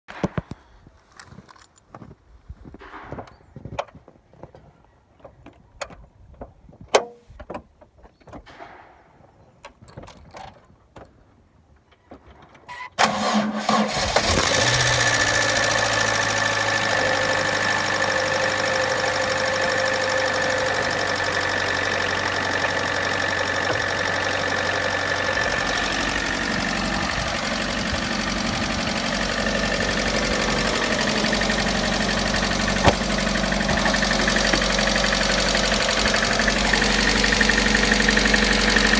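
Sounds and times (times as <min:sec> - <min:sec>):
car engine starting and idling: 0:13.0 - 0:38.9
hydraulic lifters tapping: 0:14.5 - 0:38.9.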